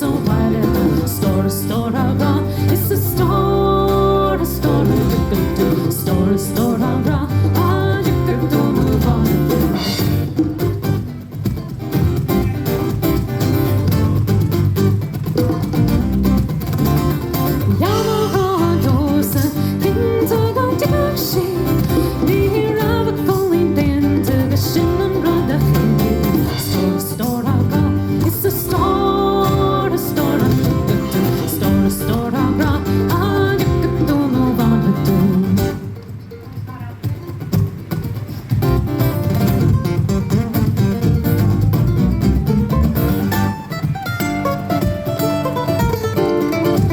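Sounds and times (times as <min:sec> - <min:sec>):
acoustic guitar strumming: 0:00.0 - 0:46.9
folk band playing: 0:00.0 - 0:46.9
melodic lead line: 0:15.8 - 0:35.9.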